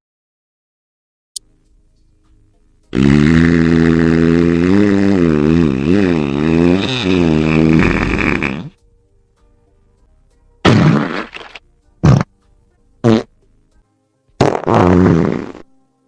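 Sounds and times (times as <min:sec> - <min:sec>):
fart sound effect: 0:02.9 - 0:08.8, 0:10.6 - 0:12.3, 0:13.0 - 0:13.3, 0:14.4 - 0:15.8.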